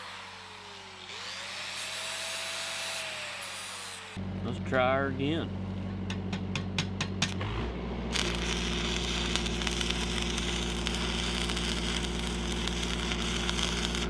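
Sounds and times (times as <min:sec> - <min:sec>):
welding machine engine drone: 0:07.0 - 0:14.0
welding arc crackling: 0:08.1 - 0:14.0.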